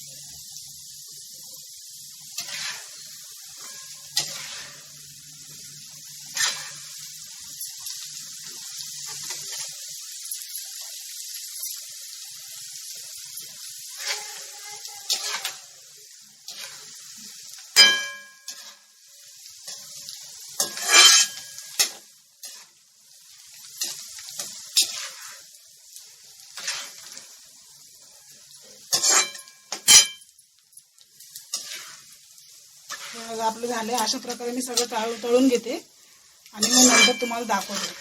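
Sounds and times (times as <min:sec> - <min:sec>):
hot oil sizzling: 0:00.0 - 0:38.0
metal spoon clinking against pan: 0:17.8 - 0:18.7, 0:20.6 - 0:21.9, 0:28.9 - 0:30.3, 0:36.6 - 0:37.4.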